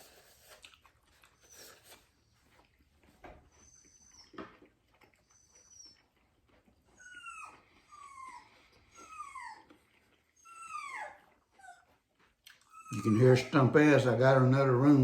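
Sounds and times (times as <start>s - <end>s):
dog whining: 3.4s - 13.5s.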